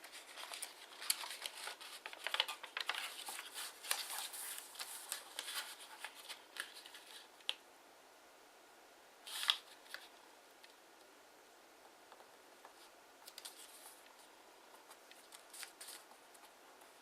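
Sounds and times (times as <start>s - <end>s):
paper rustling and crackling: 0.0s - 7.6s, 9.3s - 10.1s, 12.6s - 17.0s.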